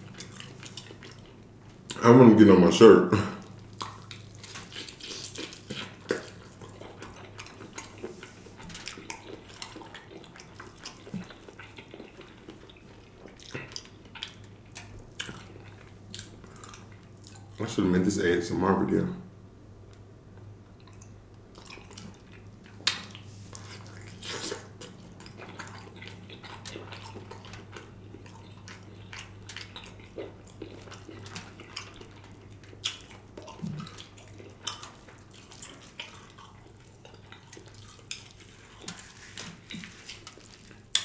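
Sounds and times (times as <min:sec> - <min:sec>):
chewing and mouth clicks: 0:00.0 - 0:02.0, 0:03.4 - 0:17.7, 0:19.9 - 0:41.0
low steady hum: 0:00.0 - 0:41.0.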